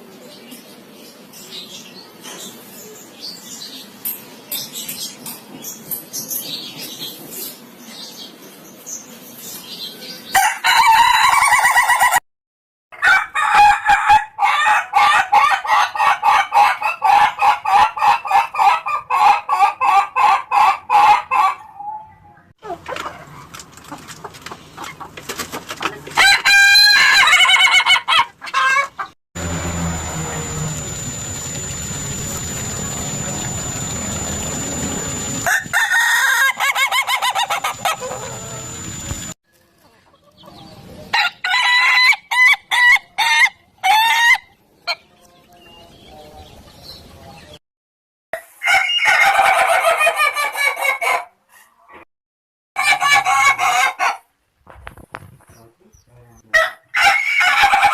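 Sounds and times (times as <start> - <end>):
roosters crowing: 10.3 - 12.2, 13.0 - 22.1, 26.1 - 39.4, 41.1 - 44.6, 48.5 - 51.3, 52.8 - 54.2, 56.6 - 57.9
thin high whine: 29.4 - 35.8, 37.2 - 39.4.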